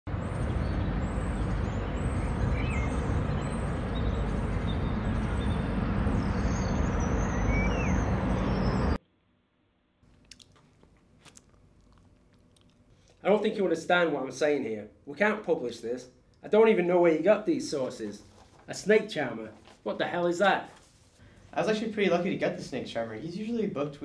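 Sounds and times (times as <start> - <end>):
birds chirping: 0.1 - 9.0
road traffic rumble: 0.1 - 9.0.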